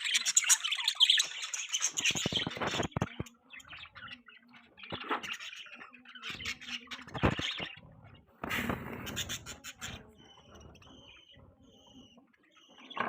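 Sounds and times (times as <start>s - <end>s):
budgies chirping: 0.0s - 13.0s.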